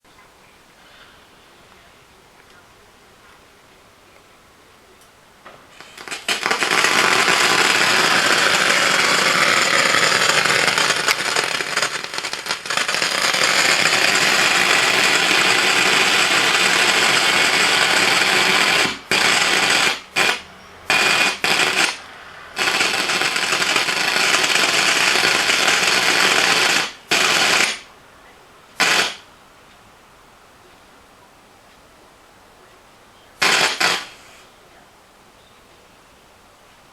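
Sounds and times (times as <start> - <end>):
speaker crackling and popping: 5.0 - 22.0, 22.6 - 27.9, 28.7 - 29.8.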